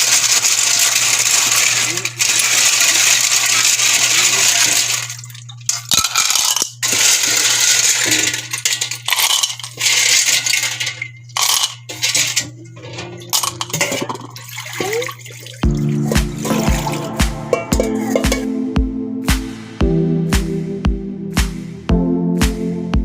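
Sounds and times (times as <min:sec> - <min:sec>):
shells clinking in water: 0:05.7 - 0:15.2
water splashing: 0:13.2 - 0:18.5.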